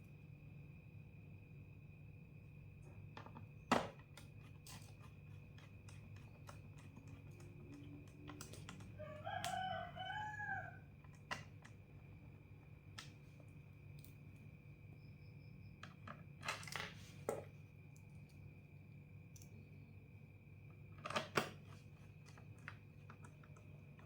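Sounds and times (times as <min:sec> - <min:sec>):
rooster crowing: 0:08.8 - 0:10.9.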